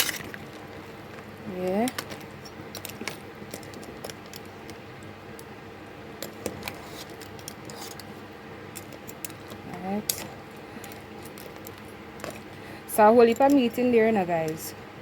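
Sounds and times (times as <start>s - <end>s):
faint steady hum: 0.0s - 15.0s
spoon stirring in a pot: 6.2s - 12.5s.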